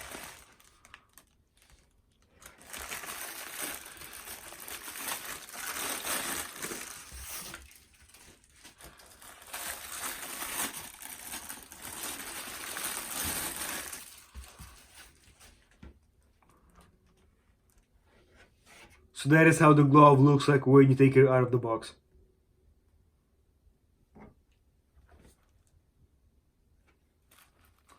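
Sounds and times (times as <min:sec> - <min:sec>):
packaging rustling and crinkling: 0:00.0 - 0:15.8, 0:27.2 - 0:27.9.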